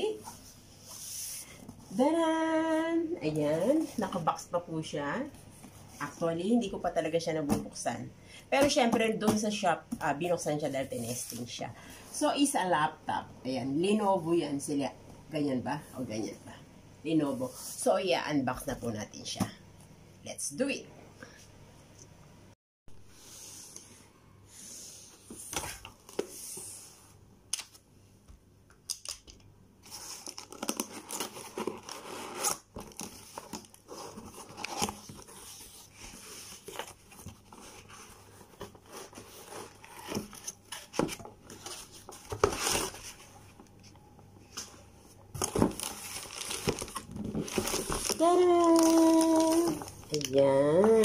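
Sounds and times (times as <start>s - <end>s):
packaging crinkling: 29.9s - 43.2s, 45.4s - 51.0s.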